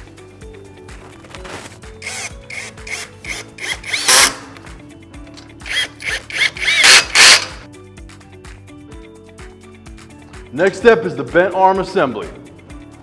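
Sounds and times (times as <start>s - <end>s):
electric wrench whining: 2.0s - 7.7s.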